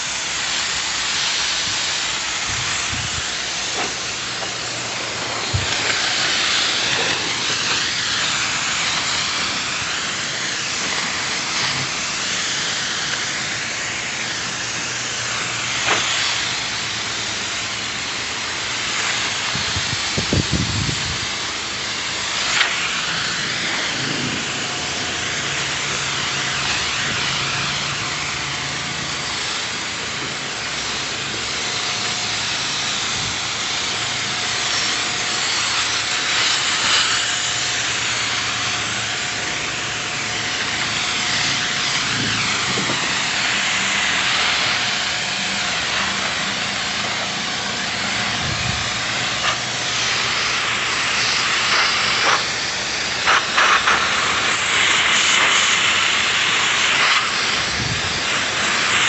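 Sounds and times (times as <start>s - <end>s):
sprayer hissing: 0.0s - 59.0s.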